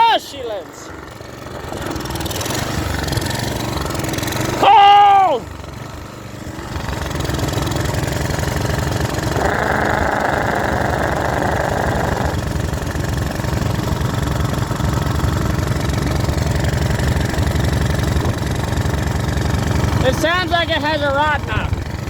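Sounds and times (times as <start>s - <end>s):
small engine running rough: 0.0s - 22.0s
engine knocking: 0.8s - 22.0s.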